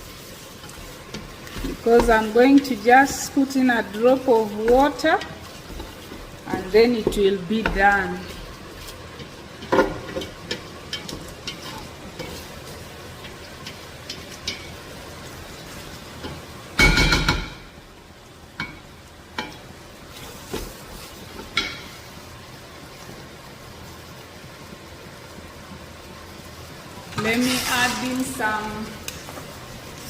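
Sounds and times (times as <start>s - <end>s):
food frying in a pot: 0.0s - 30.0s
spoon scraping a pot: 3.9s - 12.6s.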